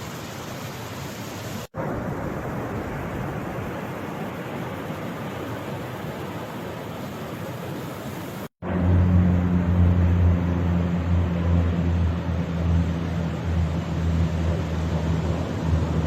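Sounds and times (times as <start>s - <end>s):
wash of noise: 0.0s - 16.0s
low engine drone: 8.6s - 16.0s.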